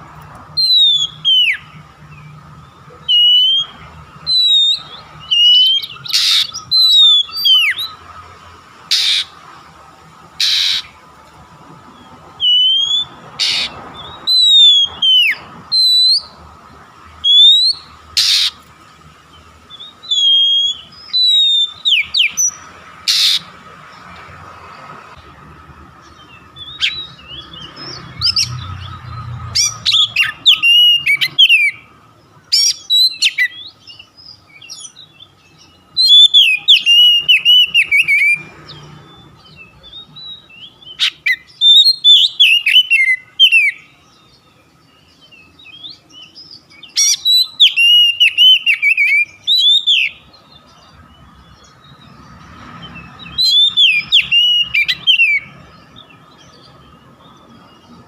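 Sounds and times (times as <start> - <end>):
bird singing whistled phrases: 0.5 - 2.4, 3.0 - 8.0, 12.4 - 16.4, 17.2 - 18.6, 19.7 - 23.4, 26.6 - 31.9, 32.5 - 44.0, 45.2 - 50.3, 53.2 - 55.6.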